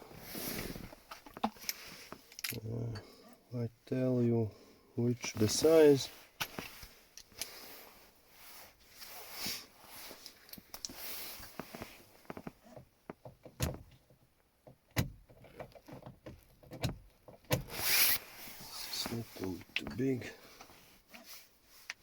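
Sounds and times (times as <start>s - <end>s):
small tools clicking and rattling: 1.2s - 3.1s.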